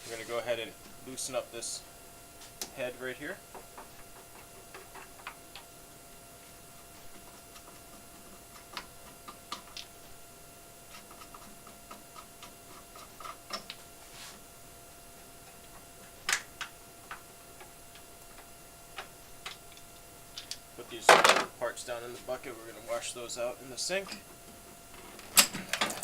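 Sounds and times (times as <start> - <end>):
faint steady hum: 0.0 - 26.0
light clicks and knocks of parts: 3.5 - 5.7, 7.0 - 10.0, 10.9 - 13.9, 15.4 - 21.5.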